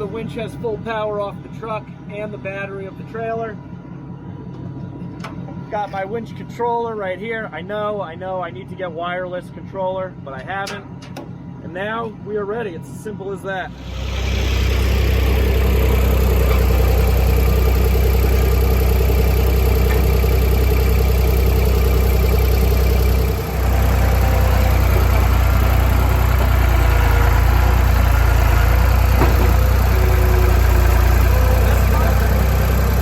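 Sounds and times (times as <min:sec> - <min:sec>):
electric winch running: 0:13.7 - 0:33.0.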